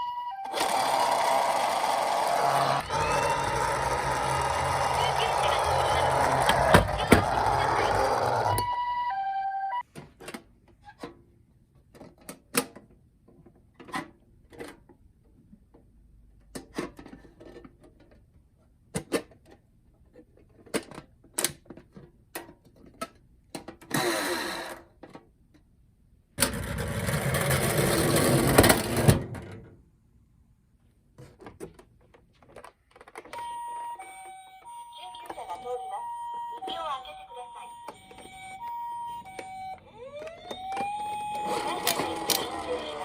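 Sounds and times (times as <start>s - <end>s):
toy cars clattering together: 40.3s - 43.0s.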